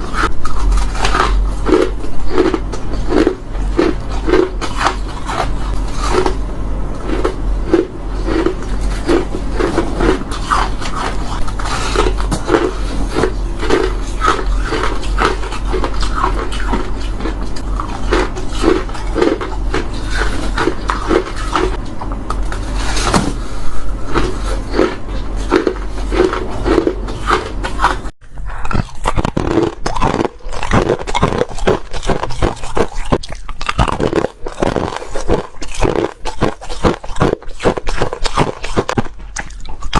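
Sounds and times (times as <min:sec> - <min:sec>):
crushed ice being bitten: 0:00.1 - 0:06.4, 0:28.6 - 0:39.9.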